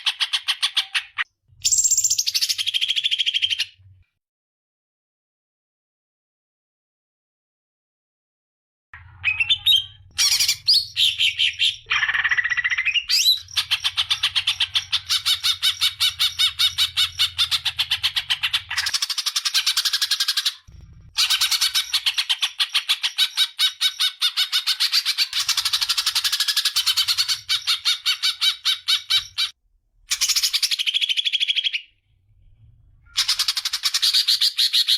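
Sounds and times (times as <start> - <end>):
songbird chattering calls: 9.2 - 29.5.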